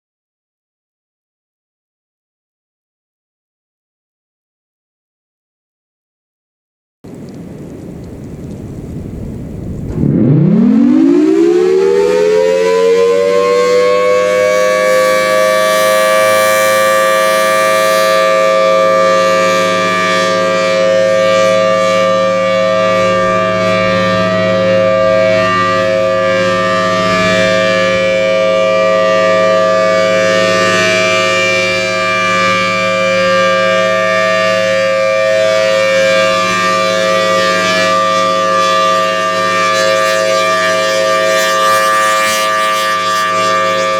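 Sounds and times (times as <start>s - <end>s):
warning siren two-note chord: 9.8s - 43.9s.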